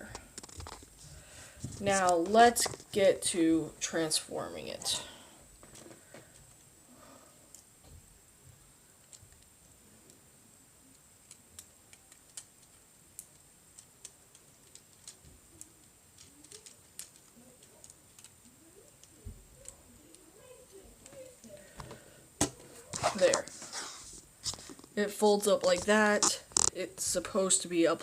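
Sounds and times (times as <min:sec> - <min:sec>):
plastic parts clicking and rattling: 0:00.1 - 0:00.9, 0:10.9 - 0:23.6, 0:25.6 - 0:26.8.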